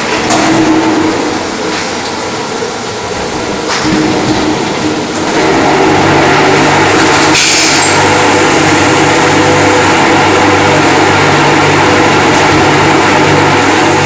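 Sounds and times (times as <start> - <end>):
paint sprayer pump hum: 6.0 - 14.0
hiss of paint spraying: 6.5 - 10.0, 13.1 - 14.0.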